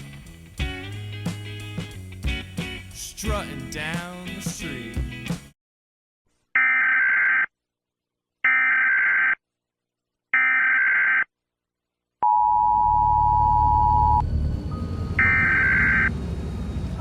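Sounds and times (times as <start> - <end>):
two-tone attention signal: 12.2 - 16.1.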